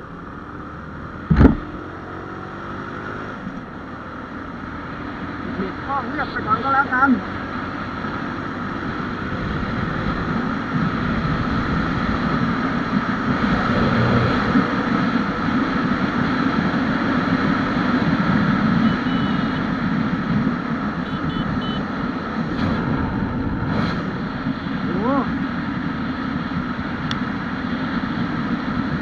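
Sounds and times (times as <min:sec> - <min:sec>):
wind noise: 0:07.4 - 0:29.0.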